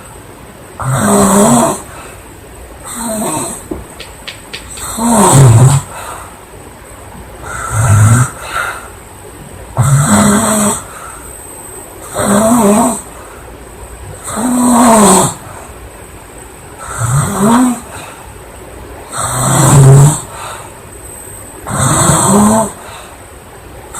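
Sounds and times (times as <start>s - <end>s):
girl snoring loudly: 0.8s - 1.9s, 2.9s - 3.6s, 4.9s - 5.9s, 7.5s - 8.5s, 9.8s - 10.9s, 12.1s - 13.1s, 14.2s - 15.4s, 16.8s - 17.9s, 19.1s - 20.3s, 21.7s - 22.8s.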